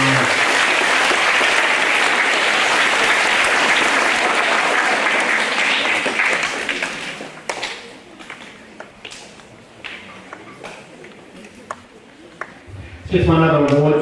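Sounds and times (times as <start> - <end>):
audience applauding: 0.0 - 8.5.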